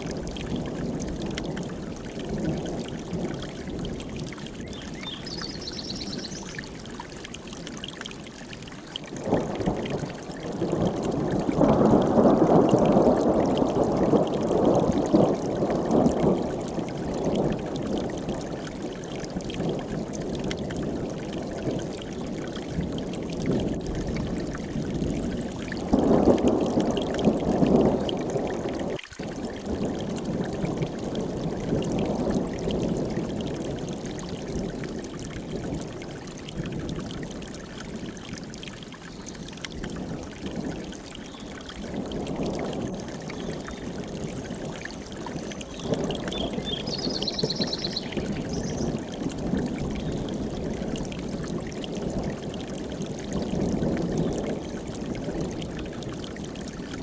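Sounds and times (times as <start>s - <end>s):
mountain stream rushing: 37.2s - 57.0s.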